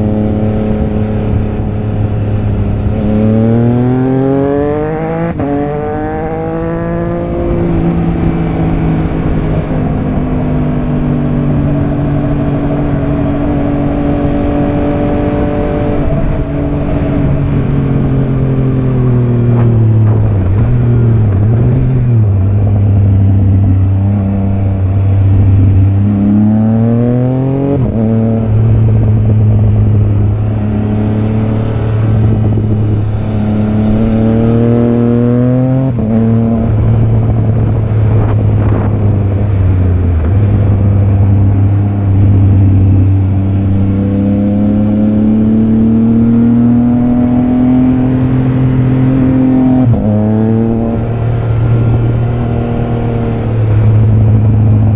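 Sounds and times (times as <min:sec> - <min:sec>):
motorcycle engine accelerating: 0:00.0 - 0:54.9.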